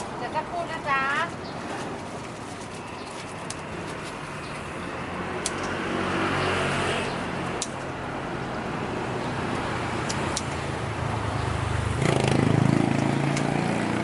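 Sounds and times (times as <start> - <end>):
sharp clicks: 5.4 - 5.8, 7.5 - 7.9, 10.0 - 10.6.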